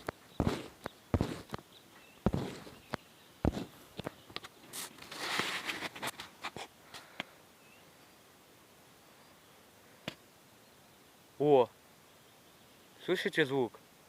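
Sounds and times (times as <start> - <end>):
campfire crackling and popping: 0.0 - 4.5.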